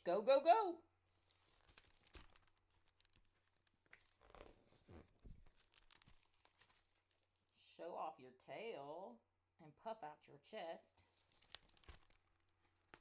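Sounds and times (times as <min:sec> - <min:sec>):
paper rustling: 0:01.1 - 0:07.3, 0:11.2 - 0:13.0
book page turning: 0:01.2 - 0:07.3, 0:11.2 - 0:13.0
small clicks of a book: 0:01.2 - 0:07.3, 0:11.2 - 0:13.0.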